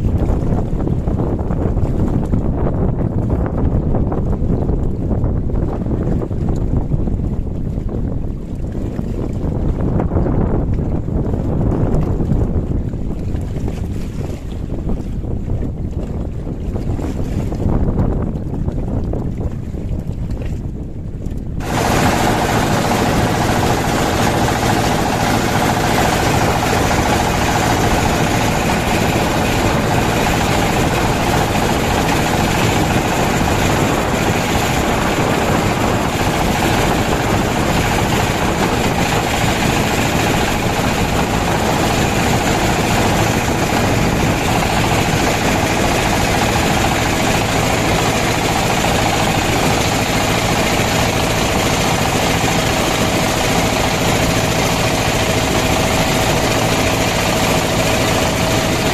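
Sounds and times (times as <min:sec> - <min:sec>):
boat engine droning: 0:21.6 - 0:58.9.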